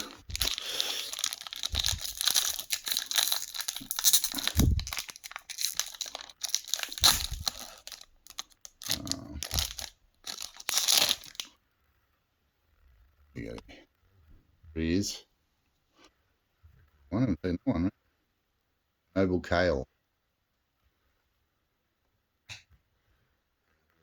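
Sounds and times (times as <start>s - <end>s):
foil wrapper tearing and crinkling: 0.0s - 11.5s.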